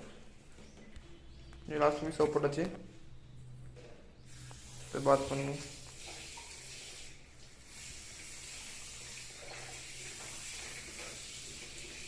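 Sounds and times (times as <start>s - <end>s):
water running from a tap: 4.3s - 12.0s.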